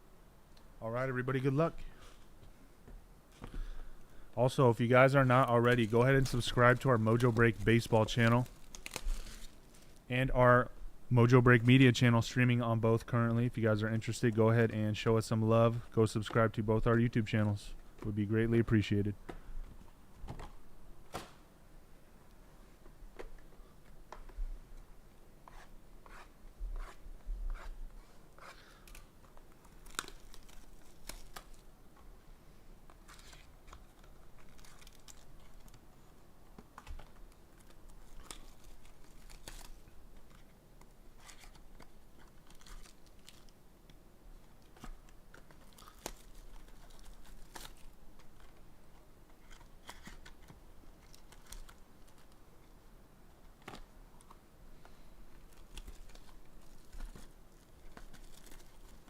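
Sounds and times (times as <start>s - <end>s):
plastic wrapping tearing and crinkling: 5.3s - 10.0s, 28.8s - 31.6s, 33.0s - 35.8s, 36.9s - 40.4s, 41.2s - 43.6s, 44.6s - 48.6s, 49.4s - 52.4s, 55.4s - 59.0s.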